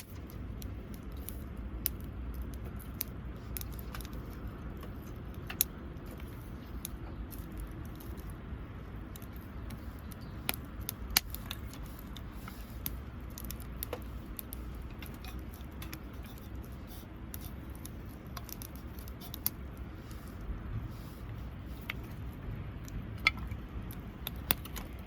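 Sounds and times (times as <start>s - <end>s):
low steady rumble: 0.0s - 25.0s
wood campfire crackling: 0.0s - 25.0s.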